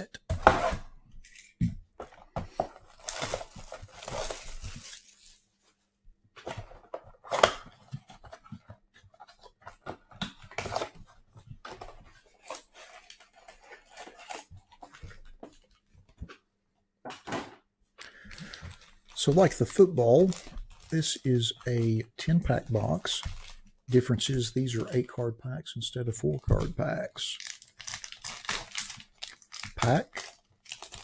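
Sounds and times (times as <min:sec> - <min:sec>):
tearing and crinkling of wrapping: 0:02.7 - 0:05.5, 0:12.1 - 0:15.8, 0:18.2 - 0:23.7, 0:26.6 - 0:31.0.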